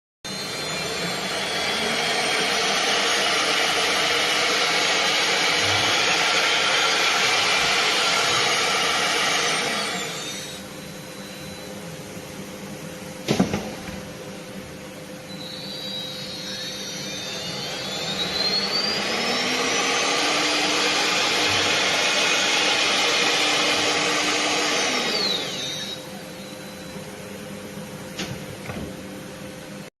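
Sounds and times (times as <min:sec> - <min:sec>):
cnc router spindles whining: 0:00.3 - 0:11.9, 0:14.5 - 0:27.8.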